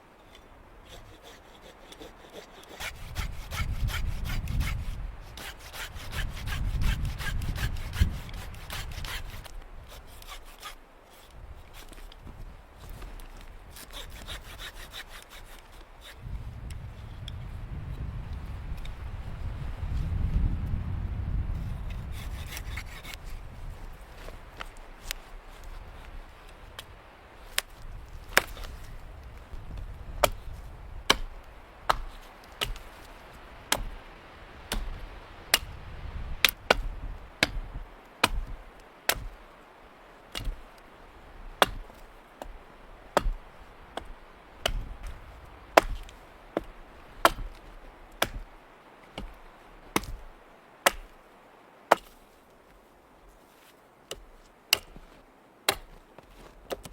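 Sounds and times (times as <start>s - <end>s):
axe chopping wood: 2.7s - 10.8s, 27.5s - 29.0s, 29.7s - 33.1s, 33.7s - 34.0s, 34.7s - 35.8s, 36.4s - 39.4s, 40.3s - 40.8s, 41.5s - 51.2s, 51.9s - 52.3s, 54.1s - 55.1s, 55.7s - 56.0s, 56.7s - 56.9s
low rumble: 16.2s - 22.0s.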